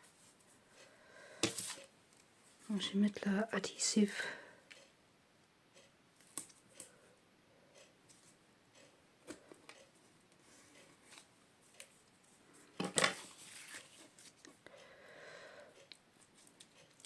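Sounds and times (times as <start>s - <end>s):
tape and paper clicks and rustles: 12.8s - 14.6s.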